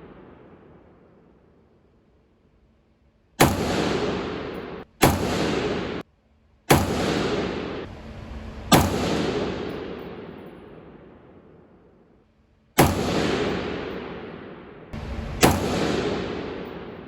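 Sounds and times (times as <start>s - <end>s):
rifle shots with echo: 0.0s - 1.6s, 3.4s - 6.0s, 6.7s - 7.9s, 8.7s - 12.1s, 12.8s - 17.0s.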